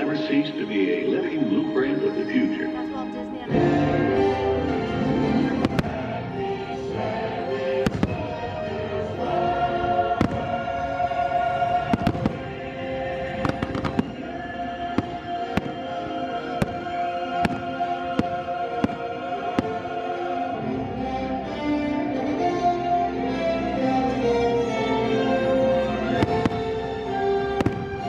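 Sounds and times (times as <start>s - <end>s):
music with held chords: 0.0s - 28.0s
fireworks bangs: 5.6s - 6.3s, 7.8s - 8.5s, 10.0s - 20.1s, 26.1s - 28.0s.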